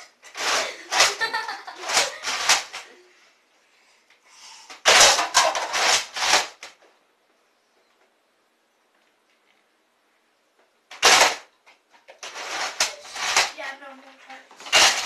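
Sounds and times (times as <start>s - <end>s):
toy blaster shots: 0.4s - 2.8s, 4.8s - 6.6s, 10.9s - 11.5s, 14.7s - 15.0s.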